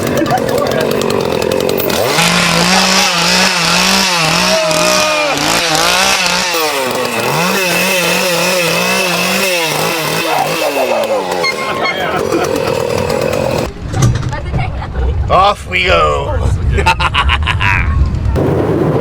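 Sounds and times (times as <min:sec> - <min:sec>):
chainsaw engine revving: 0:00.0 - 0:13.7.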